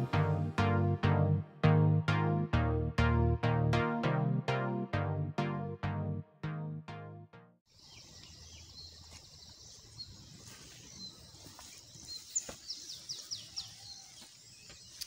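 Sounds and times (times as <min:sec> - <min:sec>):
small birds chirping: 0:07.7 - 0:15.0.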